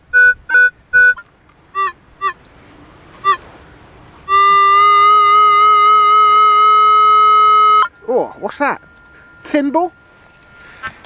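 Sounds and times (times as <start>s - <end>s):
metal detector beeping: 6.6s - 11.0s.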